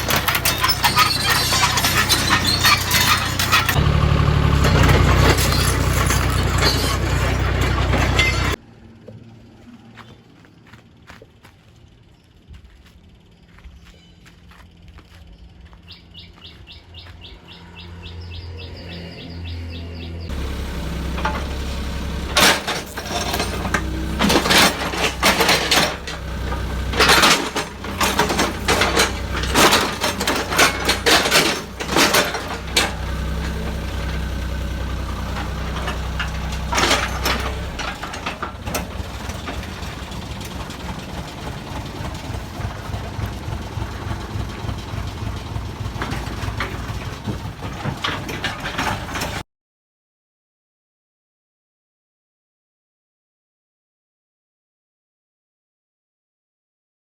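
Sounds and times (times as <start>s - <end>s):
excavator diesel engine running: 0.0s - 9.0s, 19.4s - 49.4s
birds chirping: 12.0s - 21.0s.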